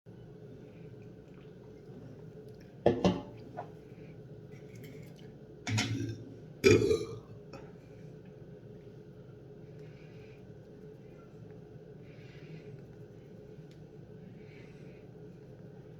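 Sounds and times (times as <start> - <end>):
person burping: 5.8 - 7.4.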